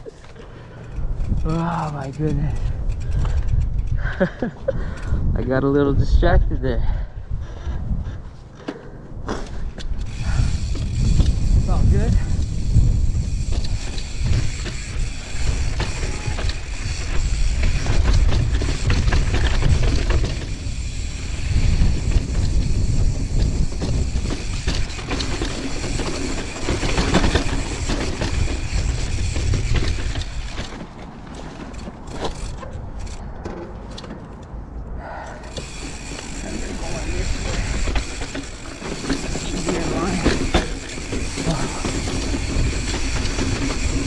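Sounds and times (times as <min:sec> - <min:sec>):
bike rattling: 0:00.0 - 0:06.3, 0:07.6 - 0:44.0
wind on microphone: 0:01.0 - 0:08.4, 0:09.5 - 0:30.7
tyres rolling over dirt: 0:10.0 - 0:34.4, 0:35.4 - 0:44.0.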